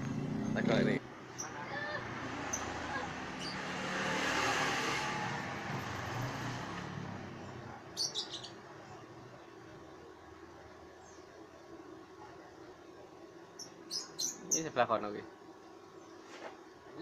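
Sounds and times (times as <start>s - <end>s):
motor vehicle passing: 0.0s - 8.7s
bird chirping: 7.9s - 9.0s, 13.6s - 14.7s.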